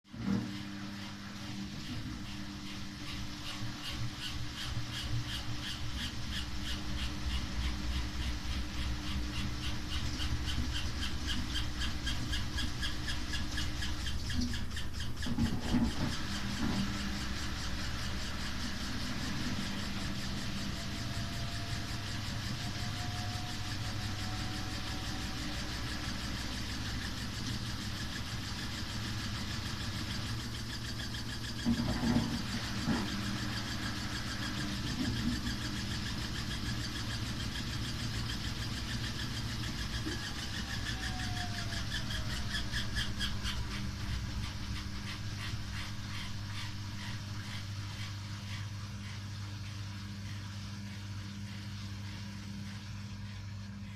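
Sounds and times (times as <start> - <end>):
washing machine running loudly: 0.0 - 53.9
faint rising whine: 15.3 - 53.9.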